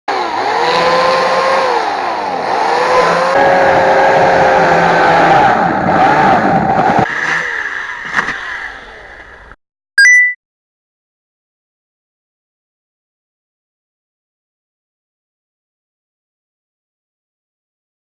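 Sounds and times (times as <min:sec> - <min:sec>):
chainsaw motor revving: 0:00.1 - 0:09.6.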